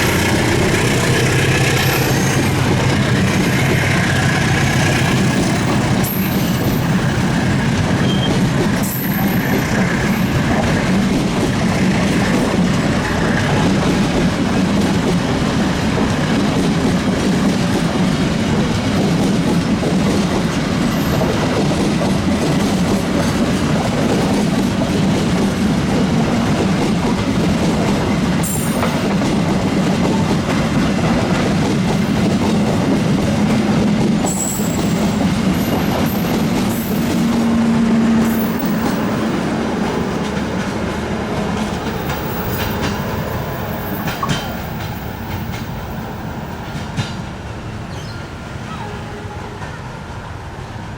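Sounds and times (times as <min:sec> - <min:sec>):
train wheels clattering over rails: 0:00.0 - 0:48.0
high wheel squeals: 0:01.4 - 0:04.0, 0:05.0 - 0:10.4, 0:34.3 - 0:39.2.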